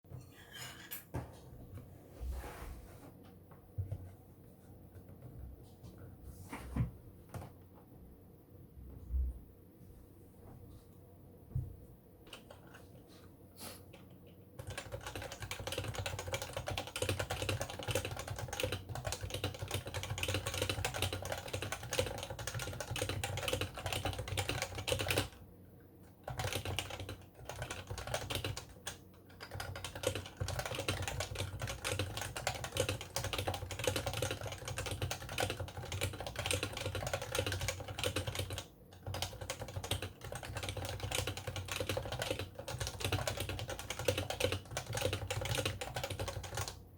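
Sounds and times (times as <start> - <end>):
fast keyboard typing: 12.3 - 12.8, 14.6 - 25.4, 26.1 - 46.8.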